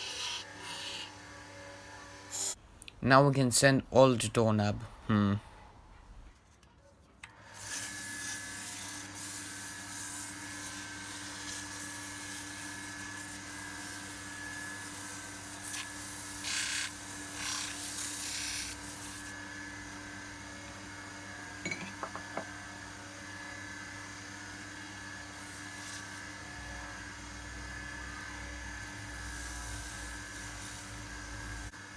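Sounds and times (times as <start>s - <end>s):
sandpaper hissing on spinning wood: 0.0s - 1.1s, 7.6s - 19.4s, 25.3s - 26.4s, 28.9s - 31.8s
wood lathe motor hum: 0.0s - 2.5s, 7.5s - 19.5s.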